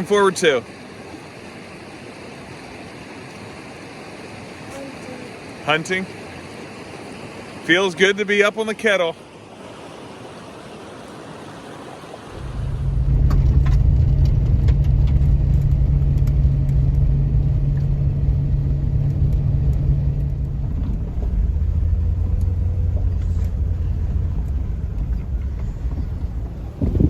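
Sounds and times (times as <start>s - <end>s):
vehicle engine rumbling: 12.3s - 27.0s.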